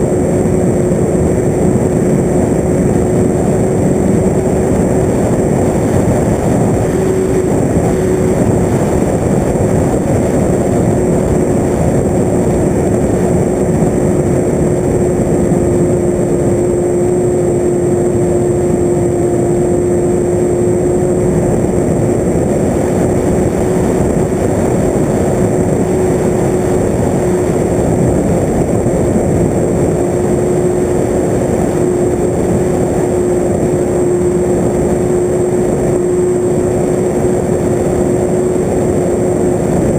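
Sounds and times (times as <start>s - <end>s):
air rushing: 0.0s - 39.9s
aircraft motor whine: 0.0s - 39.9s.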